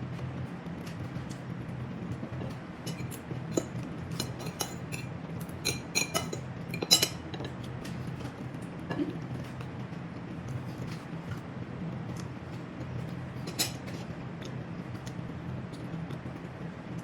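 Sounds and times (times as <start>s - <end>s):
steady low hum: 0.0s - 17.0s
cutlery clinking against dishes: 2.8s - 9.2s, 13.4s - 14.1s.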